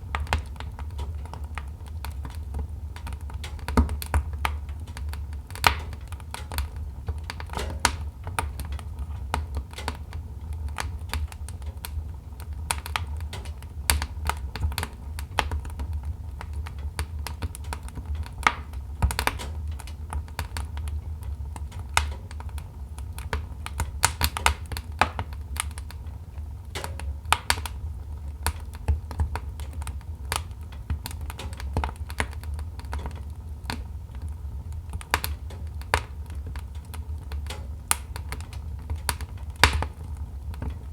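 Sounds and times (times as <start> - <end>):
low rumble of flames: 0.0 - 40.9
wood fire crackling: 0.0 - 40.9.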